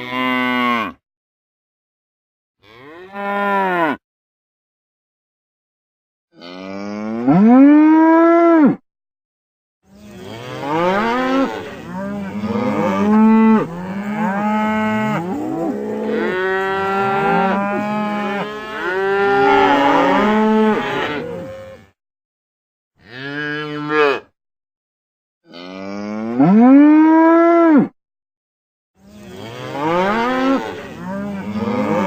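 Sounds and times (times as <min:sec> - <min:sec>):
cattle mooing: 0:00.0 - 0:01.0, 0:02.6 - 0:04.0, 0:10.0 - 0:22.0, 0:29.2 - 0:32.0.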